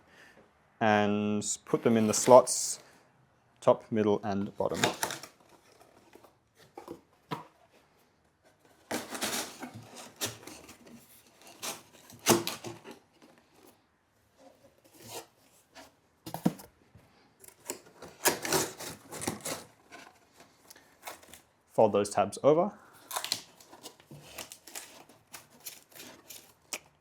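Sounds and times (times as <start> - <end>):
cardboard scraping and tapping: 4.6 - 7.8, 8.4 - 13.7, 14.4 - 16.7, 17.5 - 21.4, 23.0 - 26.9.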